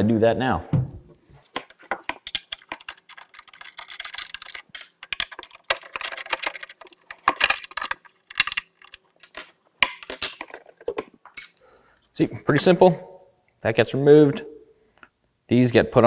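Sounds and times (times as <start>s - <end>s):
allen key clicking on bolts: 1.6s - 10.4s.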